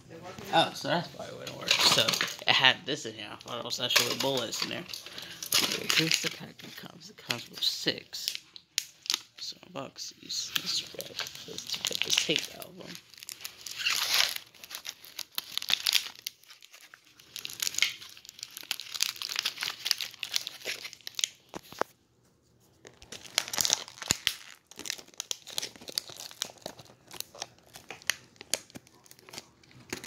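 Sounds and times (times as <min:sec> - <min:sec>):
packaging crinkling: 0:03.3 - 0:09.5, 0:10.2 - 0:22.0, 0:22.6 - 0:30.0
tape peeling and tearing: 0:13.1 - 0:21.9, 0:23.0 - 0:30.0.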